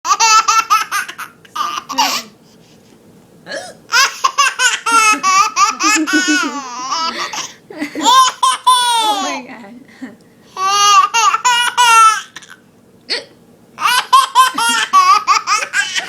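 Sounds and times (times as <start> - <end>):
high-pitched laughter: 4.8 - 7.2.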